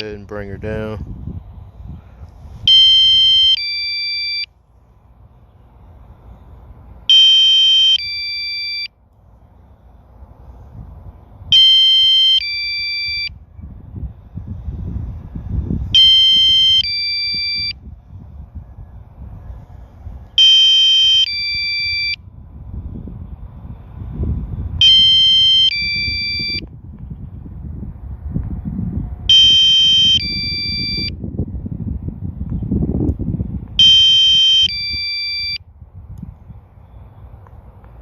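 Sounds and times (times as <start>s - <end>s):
wind rumble on microphone: 0.0s - 8.3s, 9.2s - 38.0s
electronic alarm beeping chords: 2.7s - 4.5s, 7.1s - 8.9s, 16.0s - 17.8s, 33.8s - 35.6s.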